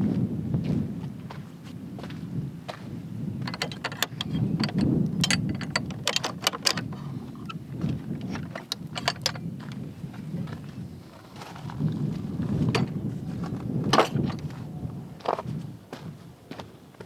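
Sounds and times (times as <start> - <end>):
wind buffeting microphone: 0.0 - 17.0
sharp crunching clicks: 3.4 - 9.9.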